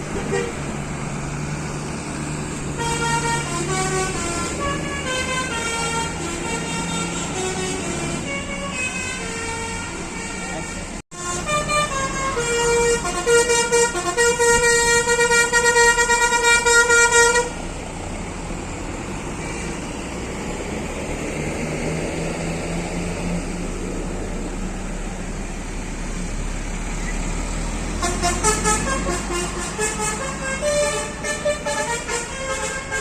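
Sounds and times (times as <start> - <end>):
bus engines running: 0.0 - 33.0
musical air horn melody: 2.7 - 17.6, 28.0 - 33.0.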